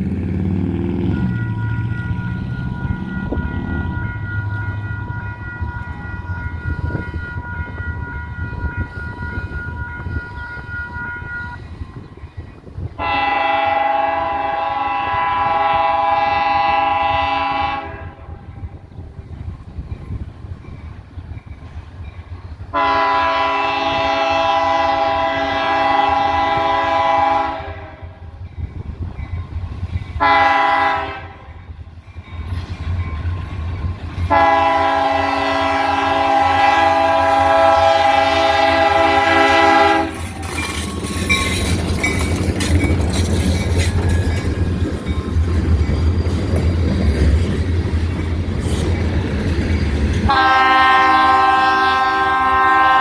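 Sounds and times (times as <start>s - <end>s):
train rumble and rail noise: 0.0s - 53.0s
locomotive horn blasts: 1.0s - 11.6s, 13.0s - 18.5s, 22.7s - 28.3s, 30.2s - 31.7s, 34.3s - 40.4s, 50.3s - 53.0s.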